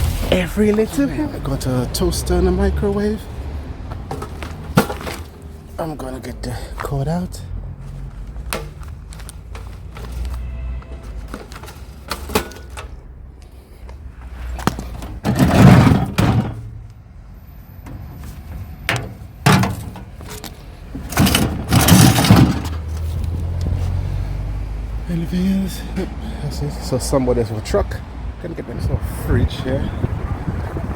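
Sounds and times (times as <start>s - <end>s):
scrap appliances clattering: 4.1s - 5.4s, 11.0s - 13.0s, 14.8s - 16.8s, 18.3s - 22.9s
rattling bursts: 15.0s - 17.0s, 17.9s - 23.1s.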